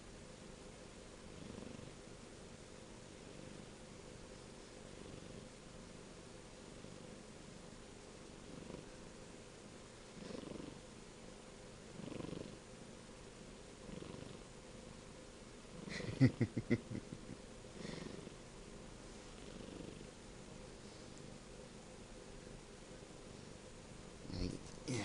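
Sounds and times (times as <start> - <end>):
kitten purring: 1.2 - 2.1, 4.9 - 5.6, 8.3 - 9.1, 10.1 - 10.9, 11.9 - 12.7, 13.8 - 14.5, 15.7 - 18.4, 19.2 - 20.2, 24.2 - 25.0.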